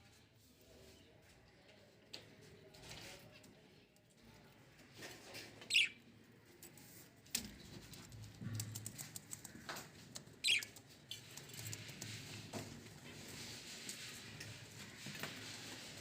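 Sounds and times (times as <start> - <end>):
budgerigars chirping: 5.7 - 6.0, 10.4 - 10.7
birds pecking: 6.6 - 13.0.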